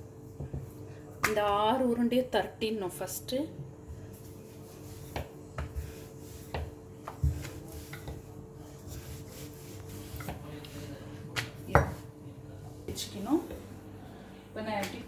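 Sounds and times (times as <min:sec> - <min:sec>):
dough tapping and rubbing: 0:00.3 - 0:01.6, 0:03.8 - 0:12.1.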